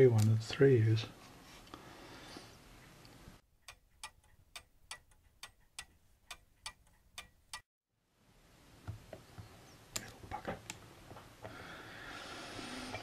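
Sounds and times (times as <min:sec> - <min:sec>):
sharp ticks: 0:03.6 - 0:07.7.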